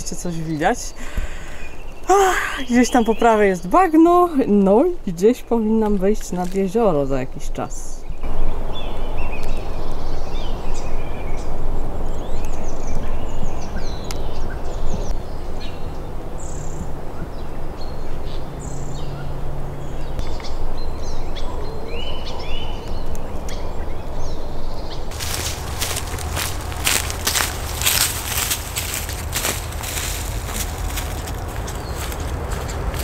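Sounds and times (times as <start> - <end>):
birds singing and calling: 0.0 - 33.0
steady low rushing noise: 25.1 - 33.0.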